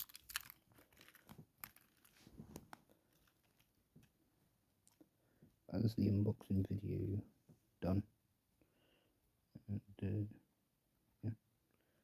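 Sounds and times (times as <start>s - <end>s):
light clicks of toy handling: 0.0s - 4.2s
soft rustles: 0.7s - 4.2s.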